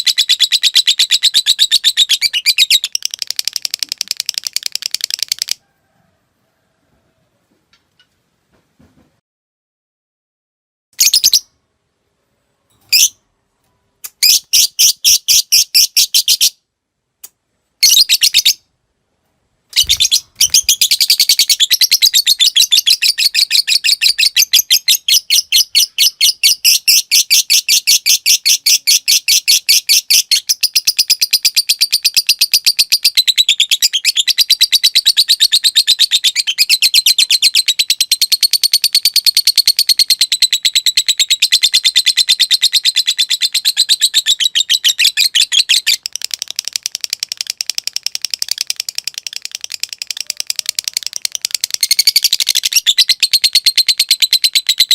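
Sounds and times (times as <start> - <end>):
bird chirps: 0.0 - 5.6, 11.0 - 11.6, 12.7 - 16.6, 17.8 - 18.7, 19.7 - 54.9
bird chattering trill: 19.8 - 30.5, 31.4 - 54.9.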